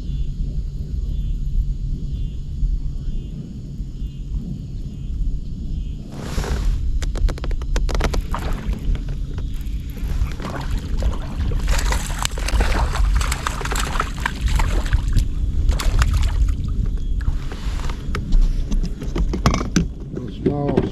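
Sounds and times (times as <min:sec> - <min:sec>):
wind rumble on microphone: 0:00.0 - 0:20.9
water splashing and sloshing: 0:06.1 - 0:19.2.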